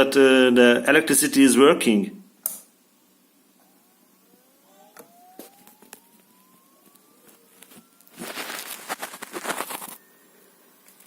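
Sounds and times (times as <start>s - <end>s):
hard disk spinning up whine: 3.2s - 11.0s
crackling handling noise: 5.0s - 11.0s.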